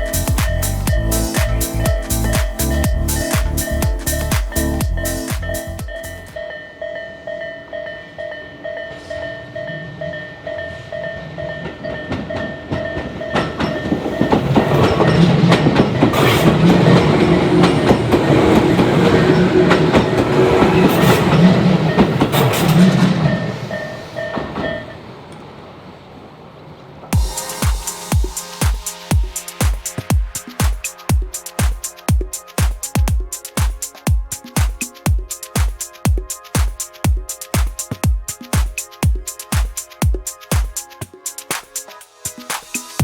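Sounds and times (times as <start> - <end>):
level-crossing warning bell ringing: 0.0 - 25.2
train passing: 0.0 - 34.6.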